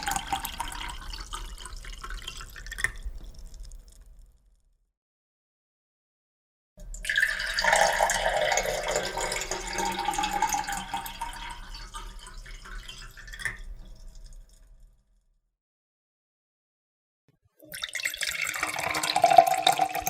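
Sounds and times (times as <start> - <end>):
water pouring into a cup: 0.0 - 3.8, 6.9 - 14.5, 17.6 - 20.0.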